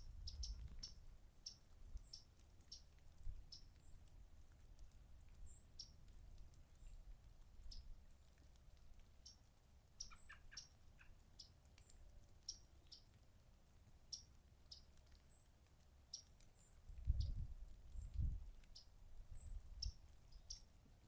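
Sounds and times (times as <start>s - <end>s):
birds chip calls: 10.0s - 13.1s.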